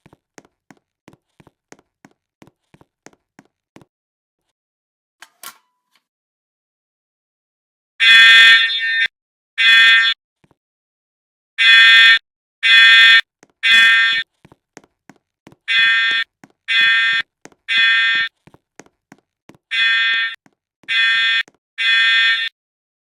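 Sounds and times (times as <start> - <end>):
fire alarm horn blast: 8.0 - 10.2, 11.6 - 14.2, 19.7 - 22.5.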